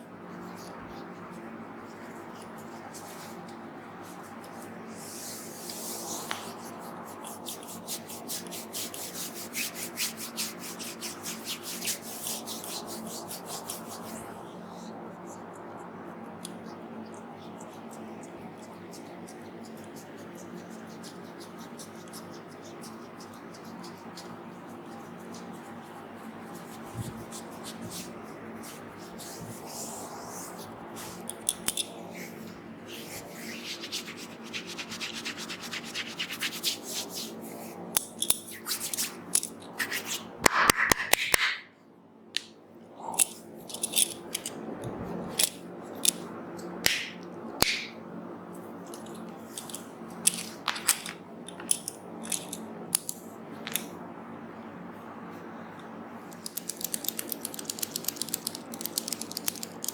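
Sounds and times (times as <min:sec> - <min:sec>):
hands rubbing through hair: 0:02.2 - 0:14.3, 0:17.9 - 0:31.5, 0:32.2 - 0:37.8, 0:39.8 - 0:41.5
sharp pats on head: 0:39.8 - 0:41.6, 0:46.9 - 0:48.0.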